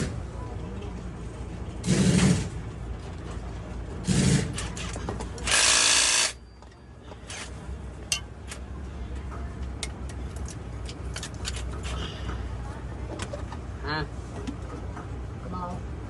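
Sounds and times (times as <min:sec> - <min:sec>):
power tool running: 0:05.5 - 0:06.4.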